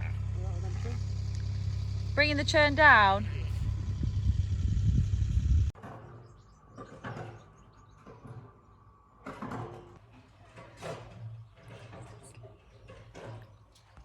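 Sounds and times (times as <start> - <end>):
sheep and lambs bleating: 0.0 - 1.2.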